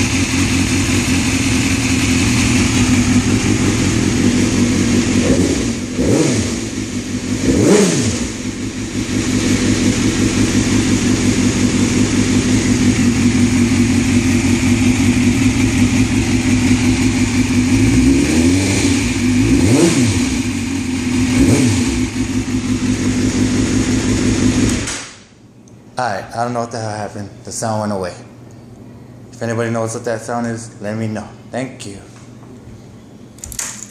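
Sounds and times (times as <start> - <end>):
motorcycle engine idling: 0.0 - 19.6, 20.2 - 24.8
engine revving: 0.0 - 24.9.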